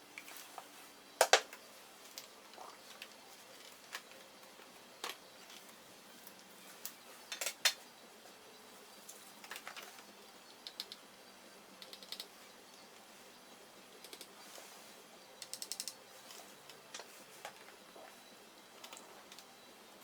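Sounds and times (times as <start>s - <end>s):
laptop parts clicking and tapping: 10.6s - 11.0s, 11.8s - 12.3s, 14.0s - 14.4s, 15.4s - 16.4s.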